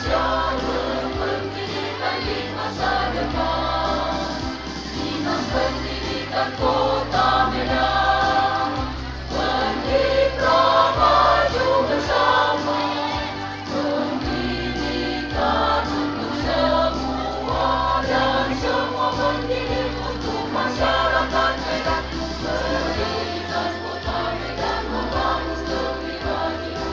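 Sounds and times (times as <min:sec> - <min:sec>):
instrumental accompaniment: 0:00.0 - 0:26.9
school choir singing a march: 0:00.0 - 0:26.9.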